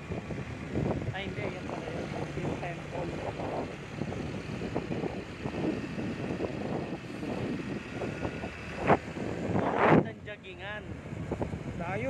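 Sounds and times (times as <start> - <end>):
motorbike engine: 0.0 - 12.0
wind buffeting microphone: 0.0 - 12.0.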